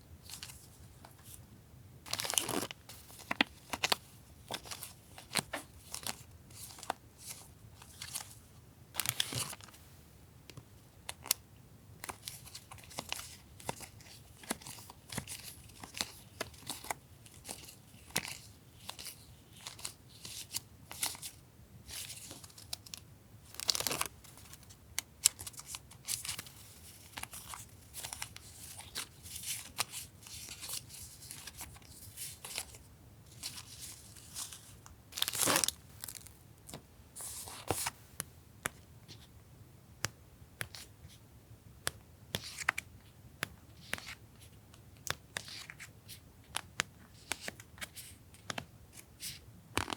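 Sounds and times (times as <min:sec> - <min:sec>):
paper packaging crinkling: 0:25.3 - 0:37.9.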